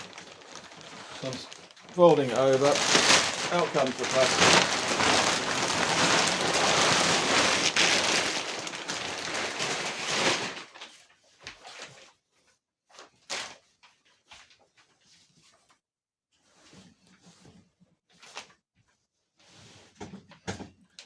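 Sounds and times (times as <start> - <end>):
plastic sheeting crinkling: 0.0 - 11.1.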